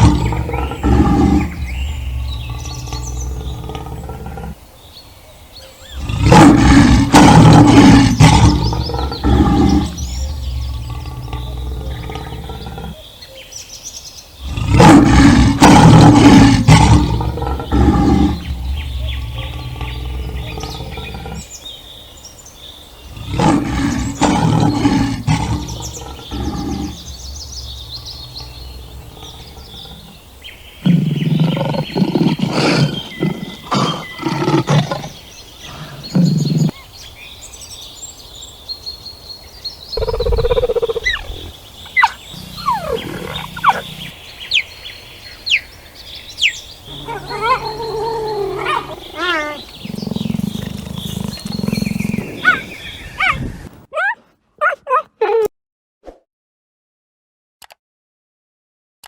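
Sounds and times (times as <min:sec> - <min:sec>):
big cat roaring: 0:00.0 - 0:04.6, 0:05.9 - 0:13.0, 0:14.4 - 0:21.5, 0:23.0 - 0:30.2, 0:30.8 - 0:36.8, 0:40.0 - 0:44.2, 0:46.9 - 0:53.8
short repeated animal calls: 0:42.0 - 0:44.7.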